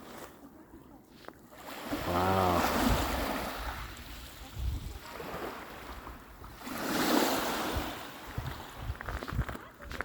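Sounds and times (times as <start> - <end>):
waves breaking on beach: 0.0 - 10.0
wind rumbling on microphone: 2.7 - 6.7, 7.5 - 10.0.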